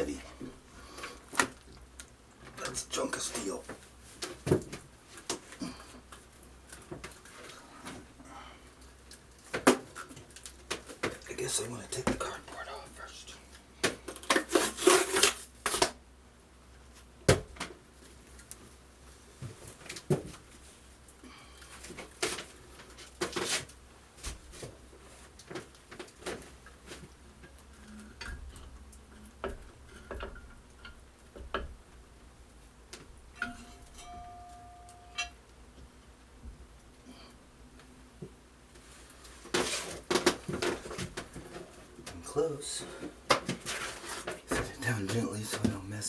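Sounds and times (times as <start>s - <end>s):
metallic clinks and knocks: 33.4s - 35.4s.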